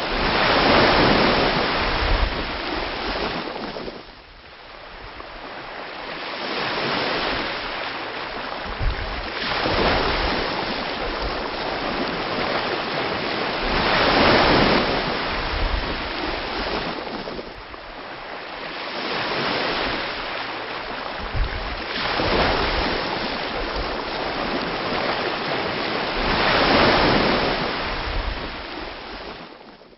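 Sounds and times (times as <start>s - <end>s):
ocean waves breaking on shore: 0.0s - 29.9s.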